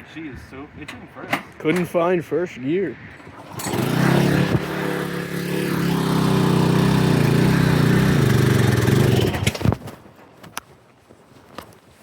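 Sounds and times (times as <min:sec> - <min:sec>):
single-cylinder engine running: 0:03.2 - 0:09.6.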